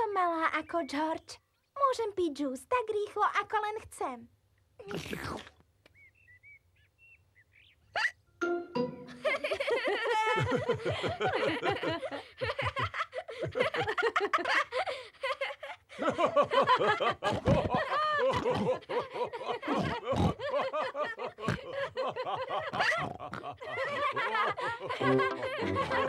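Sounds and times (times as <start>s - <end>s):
cartoon voices laughing: 9.1s - 26.0s.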